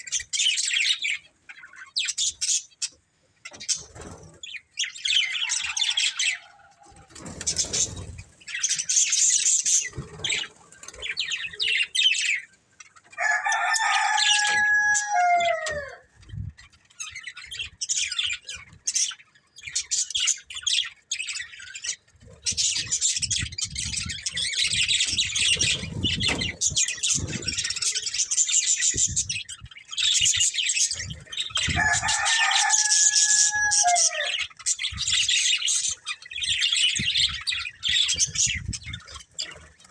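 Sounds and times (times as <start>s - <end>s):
rooster crowing: 5.4s - 7.1s, 13.2s - 16.1s, 31.7s - 34.4s.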